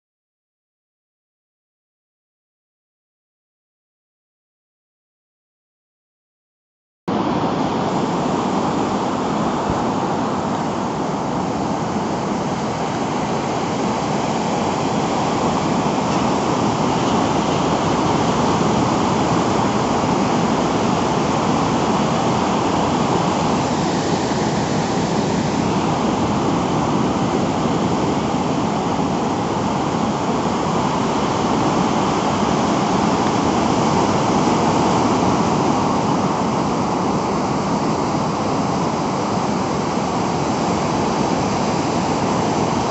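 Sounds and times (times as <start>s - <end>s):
heavy ocean surf breaking: 7.1s - 42.9s.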